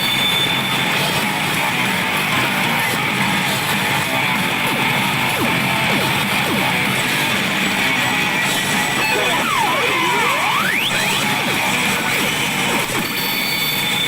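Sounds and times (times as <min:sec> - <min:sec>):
guitar-driven music from pachinko machine: 0:00.0 - 0:14.0
falling electronic tones: 0:05.4 - 0:13.6.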